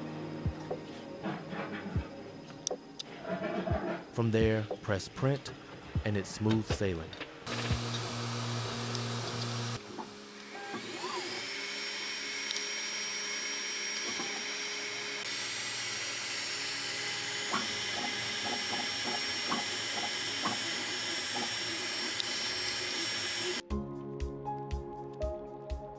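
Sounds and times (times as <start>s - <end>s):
three d printer motor whine: 7.5s - 23.6s.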